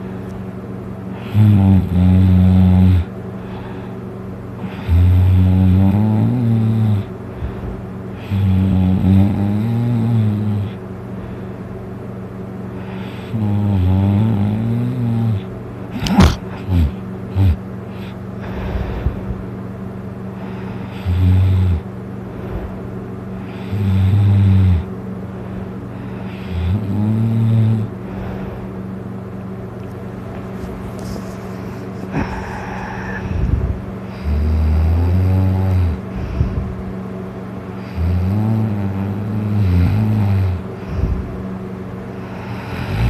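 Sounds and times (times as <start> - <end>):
steady low hum: 0.0 - 43.0
person snoring loudly: 1.1 - 3.9, 4.6 - 10.8, 12.8 - 19.3, 20.4 - 22.7, 23.4 - 24.9, 25.9 - 28.6, 31.0 - 36.8, 37.7 - 41.4, 42.2 - 43.0.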